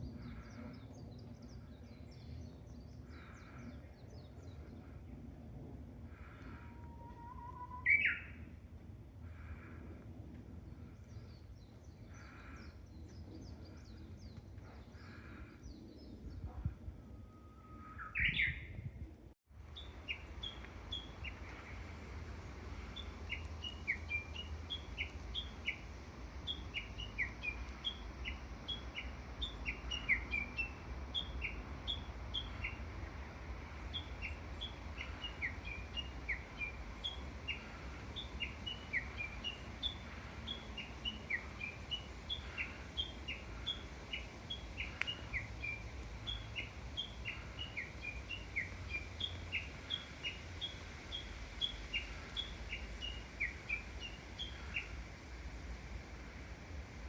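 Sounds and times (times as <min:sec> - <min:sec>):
rising bird call: 0:06.5 - 0:08.3.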